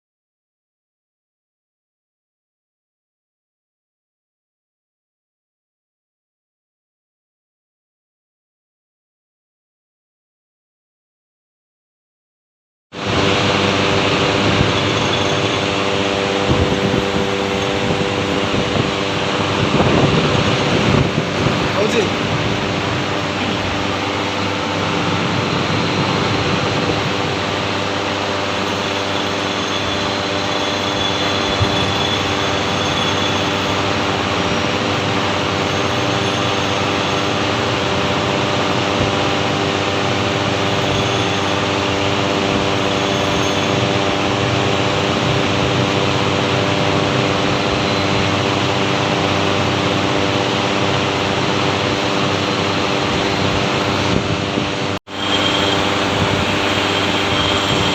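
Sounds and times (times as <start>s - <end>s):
workshop machinery humming: 13.0s - 57.9s.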